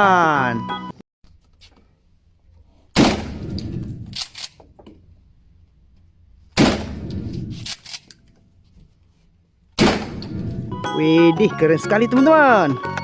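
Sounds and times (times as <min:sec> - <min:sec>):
shotgun blasts: 0:02.9 - 0:04.4, 0:06.6 - 0:08.0, 0:09.8 - 0:10.7.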